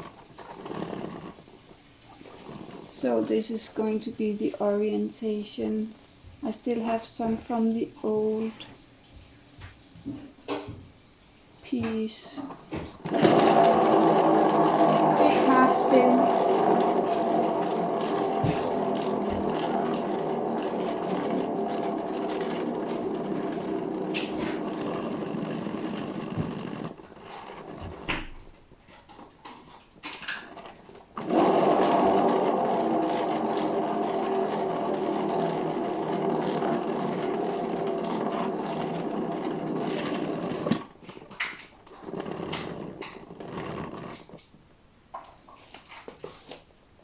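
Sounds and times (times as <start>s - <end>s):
small electric motor spinning: 13.1s - 28.0s, 31.2s - 40.9s.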